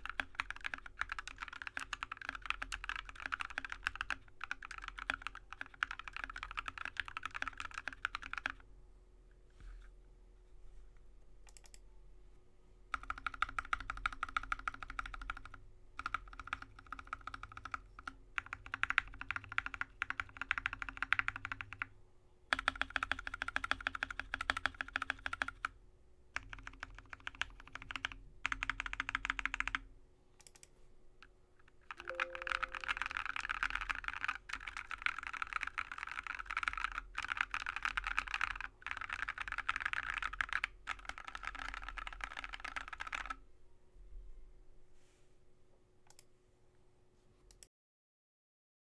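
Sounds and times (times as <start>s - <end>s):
fast typing on mechanical keyboard: 0.0s - 8.6s, 12.9s - 21.9s, 22.5s - 25.8s, 26.4s - 30.6s, 31.8s - 43.4s.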